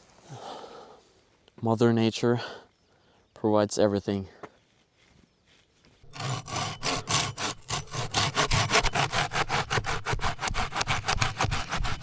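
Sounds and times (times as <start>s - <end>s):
hand saw rasping through branch: 6.0s - 12.0s.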